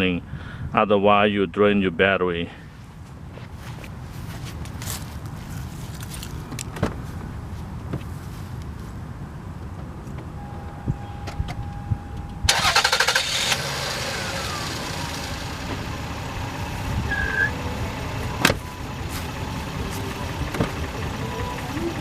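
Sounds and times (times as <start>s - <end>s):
car engine idling: 10.3s - 22.0s
car starter cranking: 10.7s - 18.7s.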